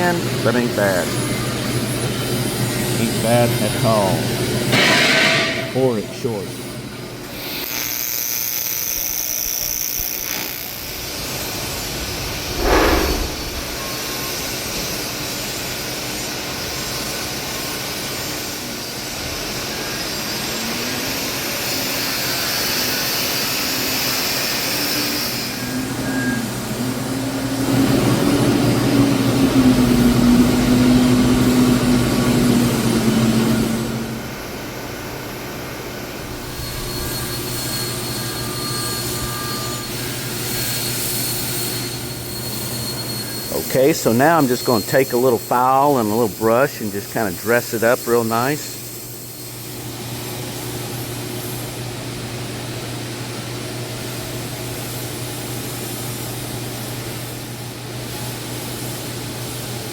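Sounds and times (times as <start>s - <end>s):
welding arc buzzing hiss: 6.5s - 27.0s, 27.6s - 59.9s.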